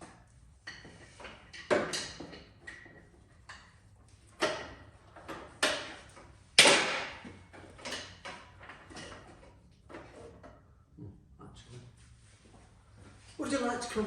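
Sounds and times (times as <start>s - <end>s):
motorcycle parts knocking and rattling: 0.0s - 10.9s.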